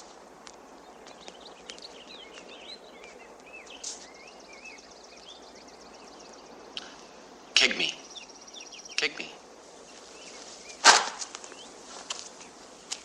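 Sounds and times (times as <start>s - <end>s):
birds chirping: 0.0s - 13.0s
steady hiss: 0.0s - 13.0s
insect ticking trill: 1.0s - 9.0s.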